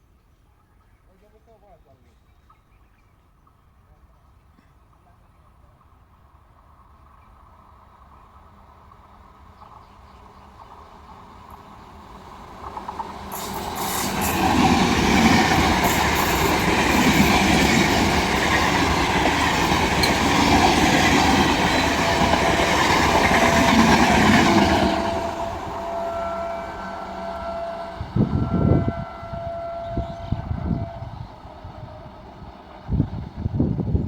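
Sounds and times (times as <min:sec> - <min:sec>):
train wheels clattering over rail joints: 0:12.6 - 0:24.7.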